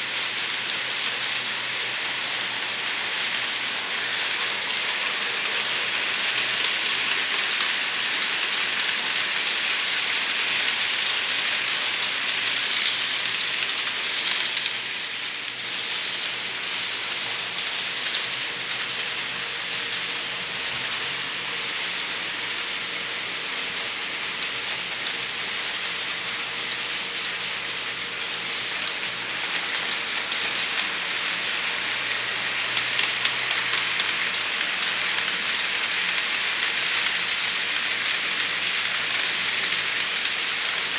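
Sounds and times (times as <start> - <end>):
model train rolling hiss: 0.0 - 20.1, 28.2 - 40.9
faint motor hum: 0.0 - 40.9
wheel clicks over rail joints: 29.5 - 40.9.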